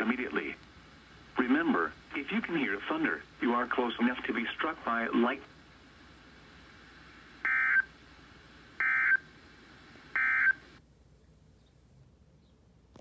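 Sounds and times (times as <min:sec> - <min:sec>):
faint radio hiss: 0:00.0 - 0:13.0
digital data tone bursts: 0:07.5 - 0:07.9, 0:08.8 - 0:09.2, 0:10.2 - 0:10.6.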